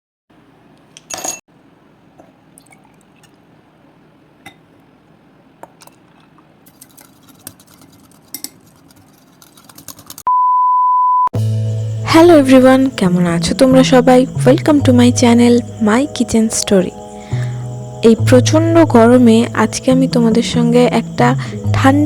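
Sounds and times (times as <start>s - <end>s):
faint steady hum: 0.4s - 10.1s, 11.6s - 22.0s
utensils and glassware clinking: 1.0s - 1.4s.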